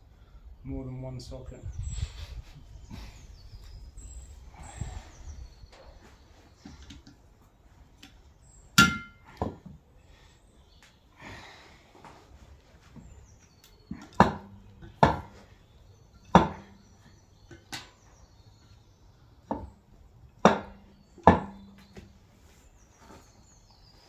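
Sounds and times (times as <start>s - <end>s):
metal-on-metal blows with ring: 8.8s - 9.3s.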